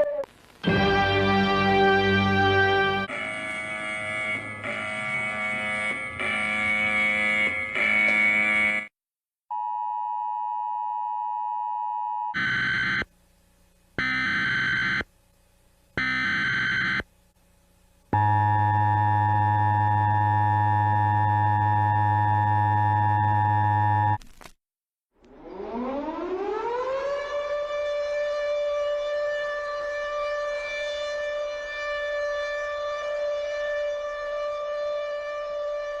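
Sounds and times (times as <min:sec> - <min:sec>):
buzzy alarm tone: 0:03.0 - 0:08.9, 0:12.4 - 0:13.1, 0:14.0 - 0:15.0, 0:16.0 - 0:17.0.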